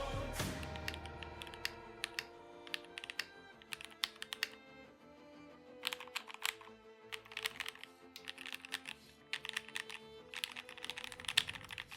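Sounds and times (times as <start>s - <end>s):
soft background music: 0.0s - 11.9s
mechanical keyboard clacking: 0.5s - 4.6s, 5.8s - 11.9s.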